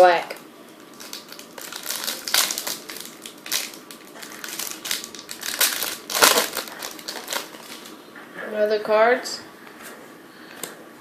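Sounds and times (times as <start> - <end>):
foil wrapper crinkling: 0.8 - 8.0.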